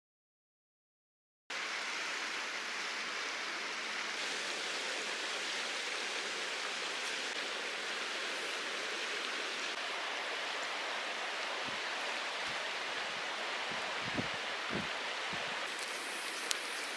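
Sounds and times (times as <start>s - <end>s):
mountain stream water rushing: 1.5s - 16.9s.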